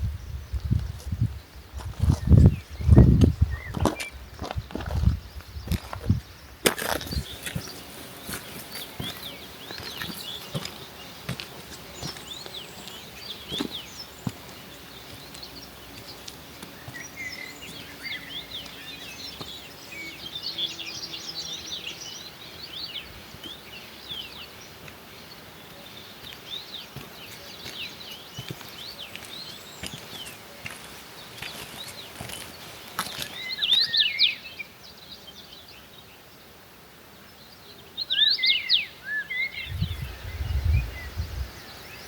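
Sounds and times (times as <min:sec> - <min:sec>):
birds chirping: 0:00.0 - 0:42.0
footsteps on a trail: 0:00.5 - 0:20.3, 0:22.6 - 0:34.1.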